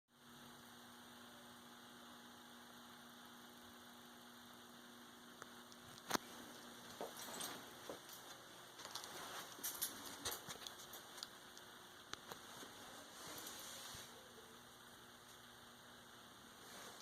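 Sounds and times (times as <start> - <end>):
faint electrical hum: 0.1 - 17.0
light hiss: 9.2 - 15.6.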